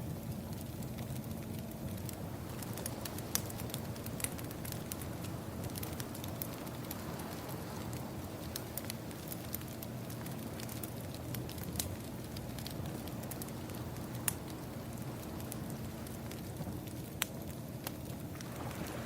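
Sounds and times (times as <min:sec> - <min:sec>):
wood fire crackling and popping: 0:00.0 - 0:19.0
ocean waves: 0:02.2 - 0:10.2, 0:18.3 - 0:19.0.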